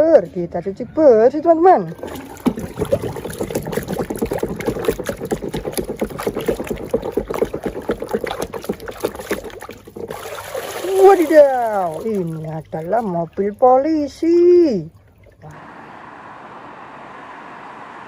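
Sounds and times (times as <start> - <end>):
water splashing and scrubbing: 1.8 - 15.6.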